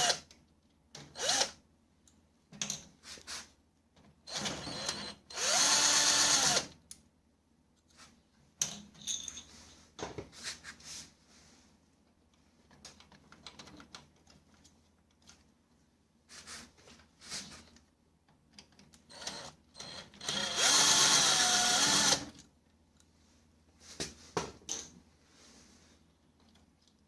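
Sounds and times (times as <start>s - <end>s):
electric screwdriver motor: 4.8s - 6.7s, 20.2s - 22.2s.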